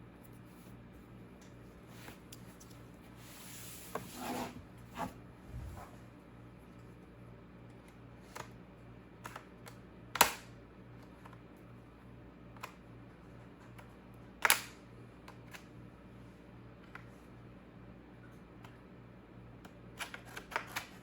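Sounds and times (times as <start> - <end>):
steady low hum: 0.0 - 19.9.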